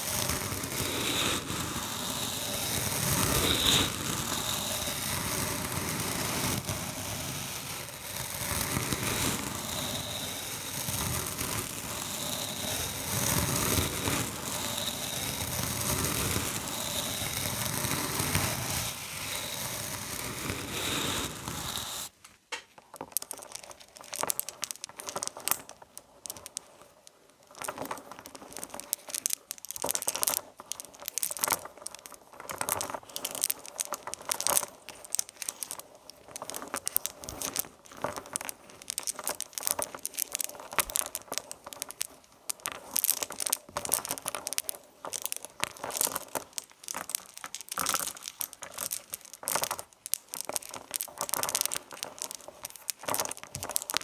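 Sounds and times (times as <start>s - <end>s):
crinkling and clicking handling noise: 22.1s - 54.0s.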